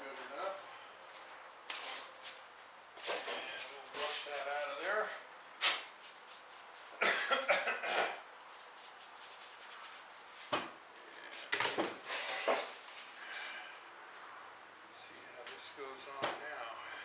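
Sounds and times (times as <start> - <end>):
wood dust being brushed: 3.0 - 7.0, 8.4 - 10.5.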